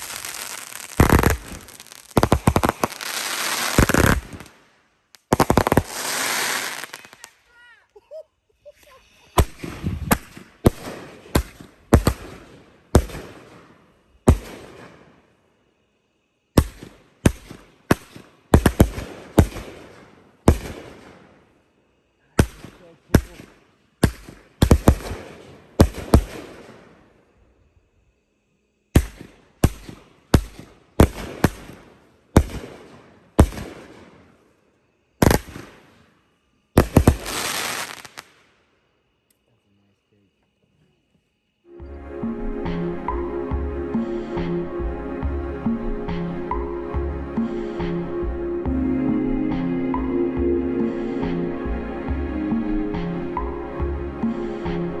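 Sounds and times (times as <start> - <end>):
firework shots crackling: 0.0 - 7.5, 9.3 - 15.3, 16.5 - 21.5, 22.4 - 27.1, 28.9 - 34.4, 35.2 - 38.6.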